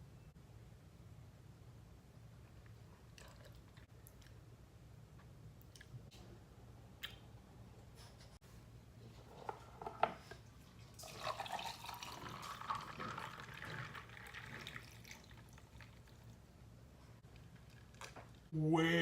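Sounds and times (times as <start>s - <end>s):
liquid poured into a cup: 10.5s - 16.4s.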